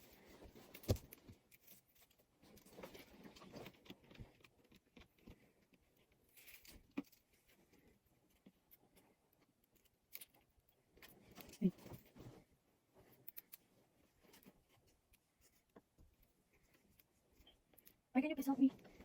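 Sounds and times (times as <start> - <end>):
small clicks taps and rustling: 0.5 - 12.3.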